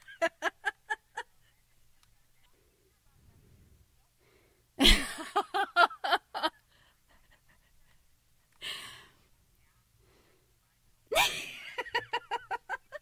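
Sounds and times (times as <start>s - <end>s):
woman laughing: 0.0s - 1.5s, 4.8s - 8.8s, 11.1s - 13.0s.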